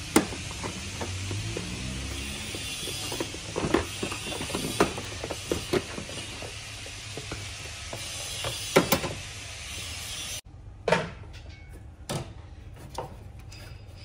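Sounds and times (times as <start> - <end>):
hand tools clicking and knocking: 0.0 - 9.9.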